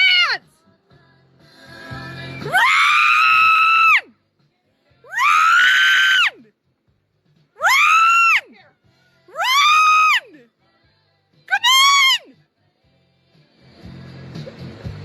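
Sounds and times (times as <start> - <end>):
high-pitched scream: 2.4 - 4.1, 5.1 - 6.4.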